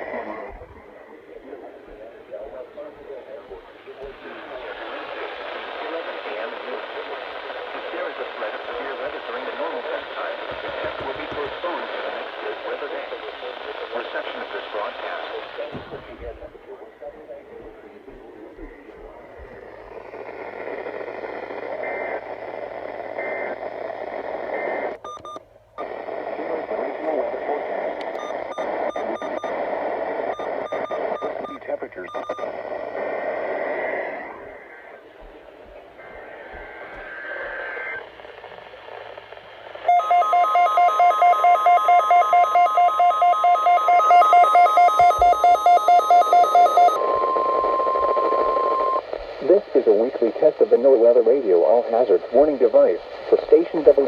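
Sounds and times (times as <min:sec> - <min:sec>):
radio static hiss: 0:00.0 - 0:54.0
pulsing beep: 0:28.2 - 0:29.5, 0:30.3 - 0:32.5, 0:39.9 - 0:49.0
warning alarm tone: 0:39.9 - 0:47.5.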